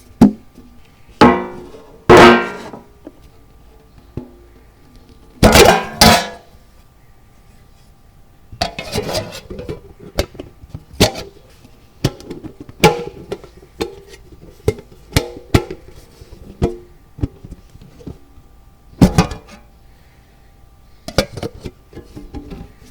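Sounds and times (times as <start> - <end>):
metal tin clanks and scrapes: 1.2 - 2.8, 5.4 - 6.5, 8.6 - 11.4, 19.0 - 19.6.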